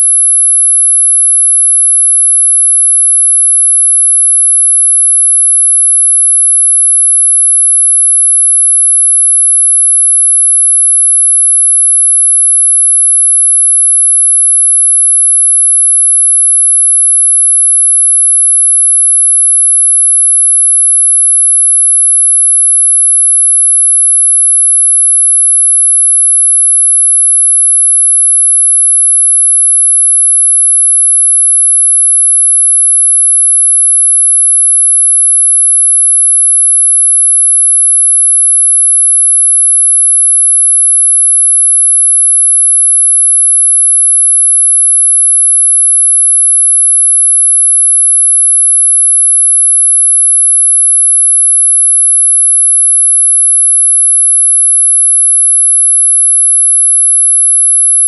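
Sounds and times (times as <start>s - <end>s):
high-pitched sine tone: 0.0s - 58.0s.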